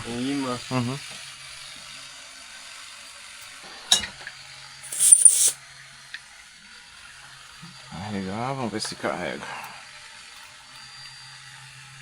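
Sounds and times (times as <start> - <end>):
high hissing air burst: 4.8 - 5.6.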